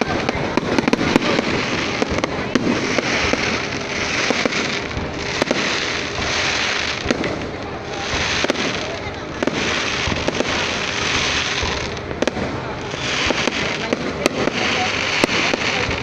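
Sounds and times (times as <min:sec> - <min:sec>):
fireworks crackling and banging: 0:00.0 - 0:16.0.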